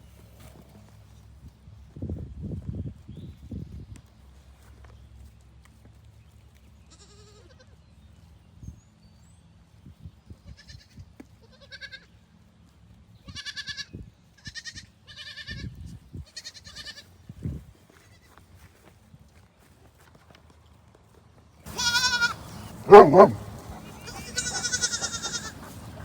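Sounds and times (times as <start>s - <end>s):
goats bleating: 6.9s - 7.6s, 11.4s - 12.1s, 13.3s - 15.7s, 16.3s - 17.1s, 21.7s - 25.8s.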